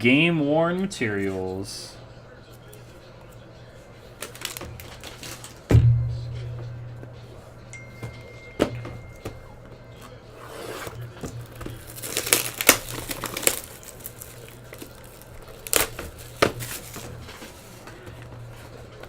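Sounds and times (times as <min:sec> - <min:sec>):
card packaging crinkling and tearing: 0:04.2 - 0:05.6, 0:10.9 - 0:18.8.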